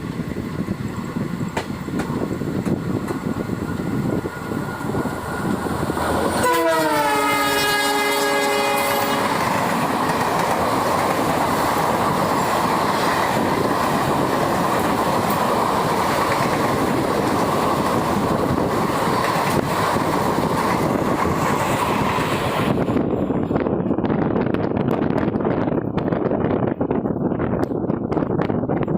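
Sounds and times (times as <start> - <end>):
train coaches rumbling past: 0.0 - 28.9
locomotive horn: 6.3 - 9.5.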